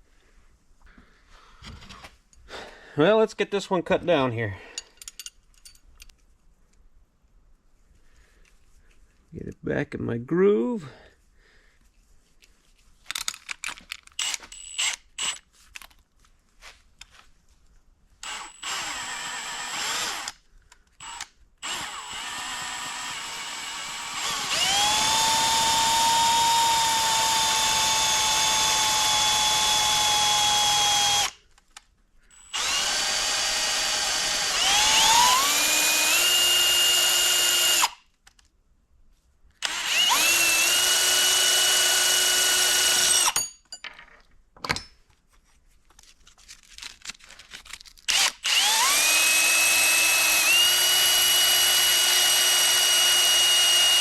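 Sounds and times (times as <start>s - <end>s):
power tool cutting steel rod: 18.2s - 20.4s, 21.0s - 31.4s, 32.3s - 38.0s, 39.6s - 43.4s, 48.1s - 54.0s.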